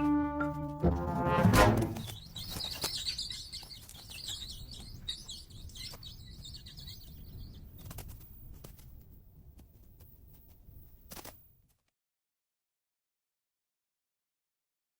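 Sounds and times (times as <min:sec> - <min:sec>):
orchestral brass chord: 0:00.0 - 0:02.0.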